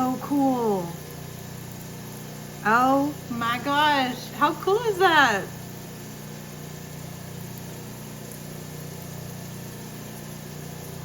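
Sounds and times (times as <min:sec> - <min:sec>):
slab saw humming: 0:00.0 - 0:11.0.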